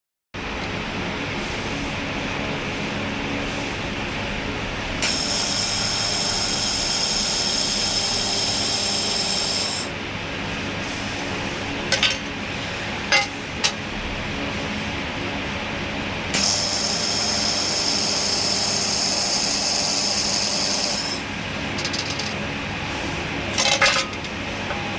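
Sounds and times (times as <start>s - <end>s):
welding machine humming: 3.7s - 10.0s, 16.1s - 22.6s.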